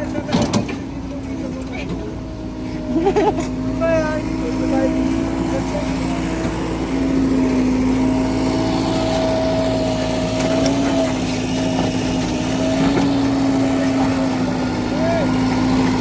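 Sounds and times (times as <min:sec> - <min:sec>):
heavy diesel engine running: 0:00.0 - 0:16.0.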